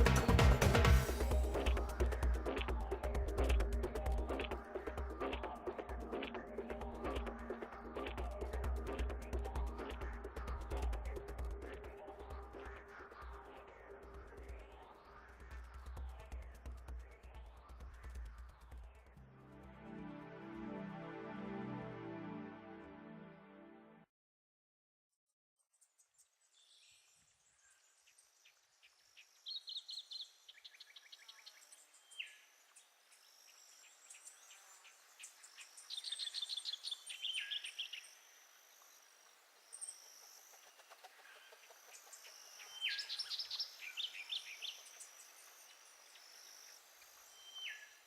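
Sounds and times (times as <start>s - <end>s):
forest birds singing: 0.0s - 19.1s, 25.8s - 48.0s
high insect hum: 31.4s - 48.0s.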